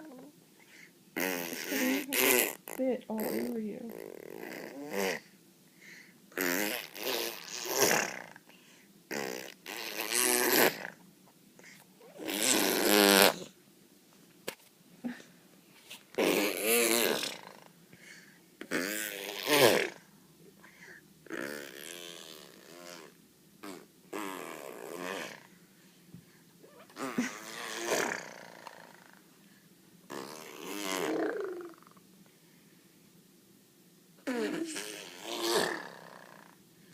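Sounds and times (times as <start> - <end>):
girl blowing raspberries: 12.1 - 13.5, 30.1 - 31.9, 34.2 - 36.4.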